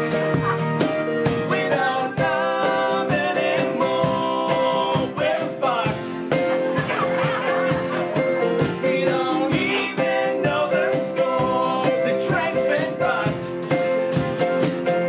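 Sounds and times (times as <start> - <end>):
guitar: 0.0 - 15.0
percussion beat: 0.0 - 15.0
sung vocals: 0.3 - 7.0, 8.6 - 13.7.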